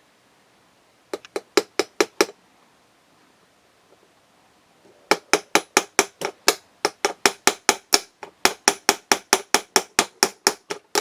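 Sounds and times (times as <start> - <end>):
small hammer tapping metal pin: 1.2 - 2.4, 5.1 - 11.0.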